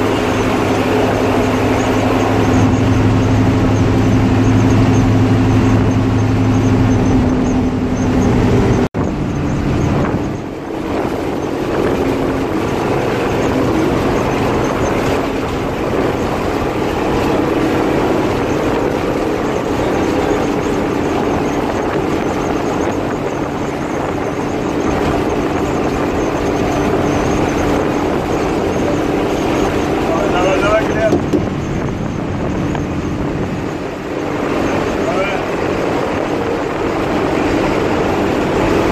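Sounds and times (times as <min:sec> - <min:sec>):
bus diesel engine running hard: 0:00.0 - 0:38.9
road and wind noise: 0:00.0 - 0:38.9.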